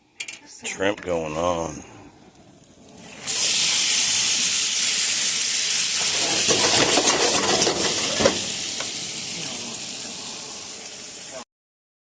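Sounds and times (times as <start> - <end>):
shrimp sizzling in hot oil: 2.8 - 11.4.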